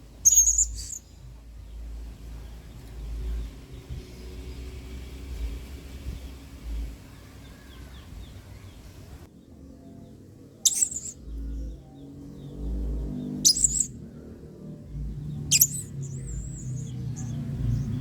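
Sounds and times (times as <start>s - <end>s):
parrot shrill high calls: 0.2s - 1.0s, 10.6s - 11.2s, 13.5s - 13.9s, 15.5s - 16.8s.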